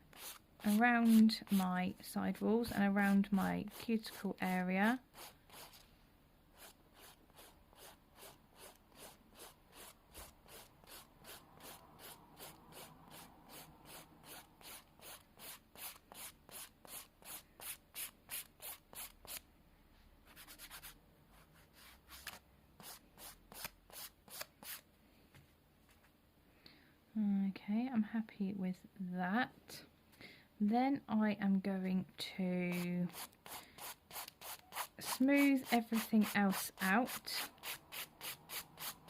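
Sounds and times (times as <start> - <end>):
nail file scraping nail: 0.1 - 1.6, 5.1 - 5.8, 6.6 - 19.4, 21.8 - 24.8, 32.7 - 39.0.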